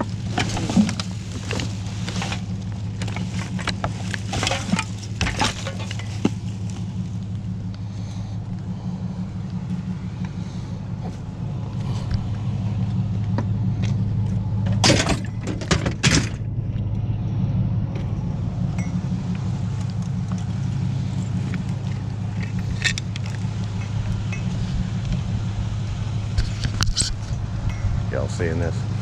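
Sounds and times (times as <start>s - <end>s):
metal knocks and clanks: 0.0s - 6.5s, 13.2s - 16.5s
vehicle engine running: 0.0s - 29.0s.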